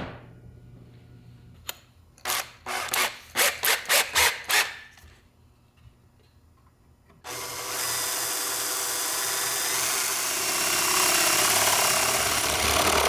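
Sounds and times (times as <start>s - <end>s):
hand tool rasping on wood: 11.2s - 13.0s.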